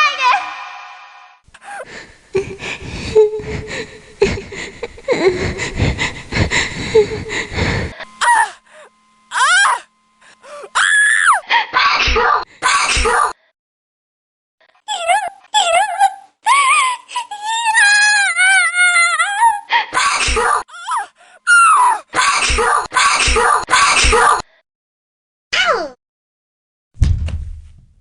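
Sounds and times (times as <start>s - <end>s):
person gasping and panting: 1.5s - 9.0s, 10.2s - 10.8s, 19.7s - 21.4s.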